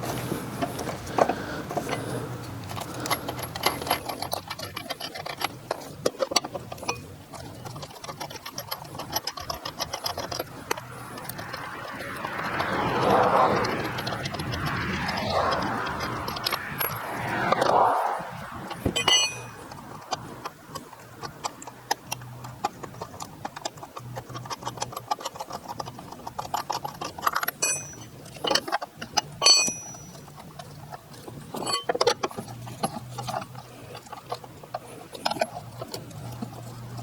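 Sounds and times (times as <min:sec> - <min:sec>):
lug wrench ticking and clicking: 0:00.0 - 0:37.0
metal clinks: 0:18.7 - 0:19.8, 0:24.2 - 0:30.6, 0:31.2 - 0:37.0.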